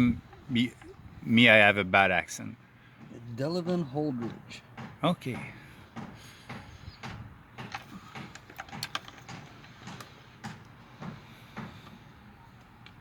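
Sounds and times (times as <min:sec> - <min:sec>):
metal parts and tools clicking: 0:07.7 - 0:09.8.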